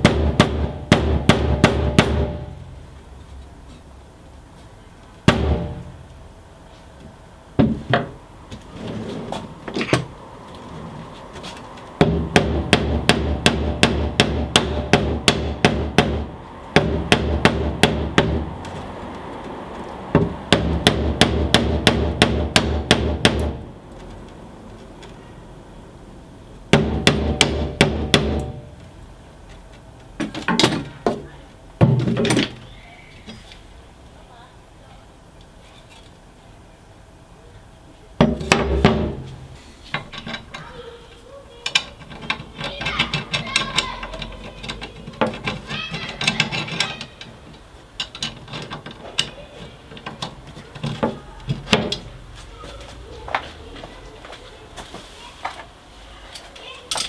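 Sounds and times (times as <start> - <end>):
hammer blows: 0.0 - 2.8, 12.0 - 18.9, 20.1 - 23.7, 26.7 - 28.8.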